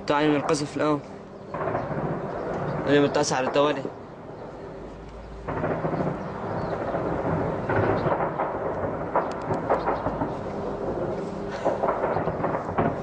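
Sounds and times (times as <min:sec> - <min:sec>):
distant shelling rumble: 0:00.0 - 0:13.0
gunfire cracks: 0:05.4 - 0:13.0.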